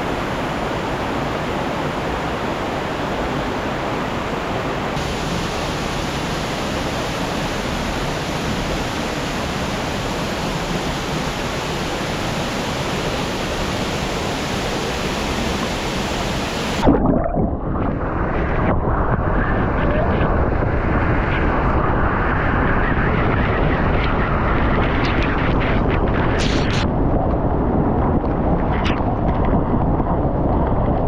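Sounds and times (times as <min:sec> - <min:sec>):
waterfall rushing: 0:00.0 - 0:17.0
muffled rumble: 0:16.6 - 0:31.0.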